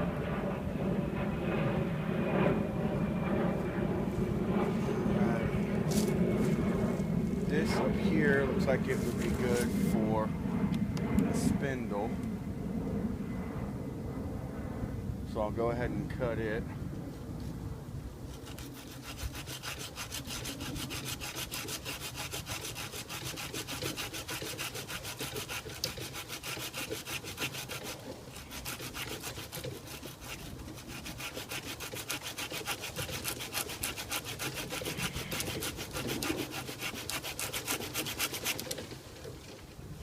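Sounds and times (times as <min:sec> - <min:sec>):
hand saw cutting branch: 0:05.9 - 0:06.2, 0:07.5 - 0:10.2, 0:18.3 - 0:39.4.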